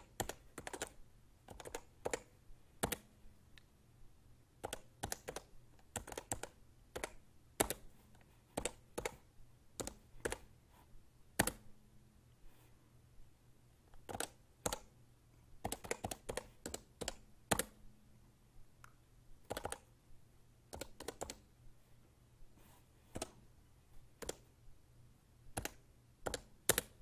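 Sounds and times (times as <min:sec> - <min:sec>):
keypad keystrokes: 0:00.0 - 0:03.1, 0:04.6 - 0:07.8, 0:08.5 - 0:09.2, 0:09.8 - 0:10.5, 0:11.4 - 0:11.6, 0:14.0 - 0:14.9, 0:15.6 - 0:17.8, 0:19.5 - 0:19.9, 0:20.7 - 0:21.4, 0:24.2 - 0:24.5, 0:25.5 - 0:27.0.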